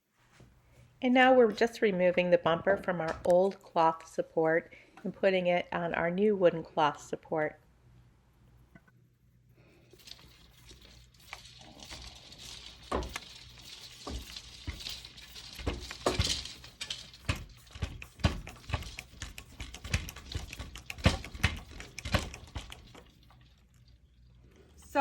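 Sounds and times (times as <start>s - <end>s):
hands knocking wooden loom parts: 12.8s - 23.1s.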